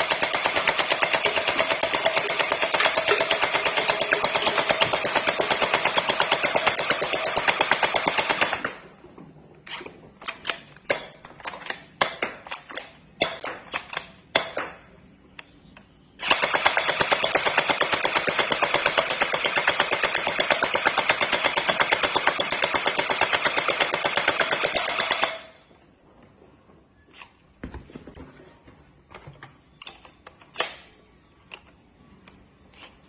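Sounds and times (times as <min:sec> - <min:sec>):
toy blaster firing full auto: 0:00.0 - 0:08.8, 0:16.2 - 0:25.6.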